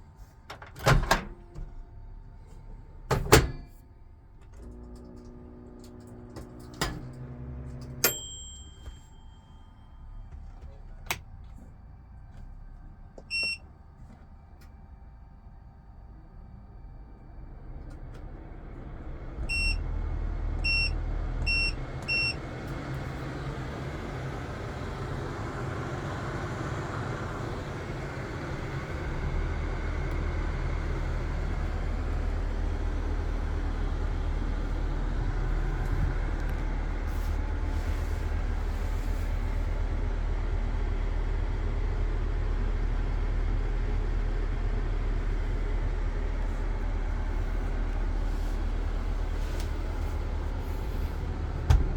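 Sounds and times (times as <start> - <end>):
machine hum: 21.7 - 51.9.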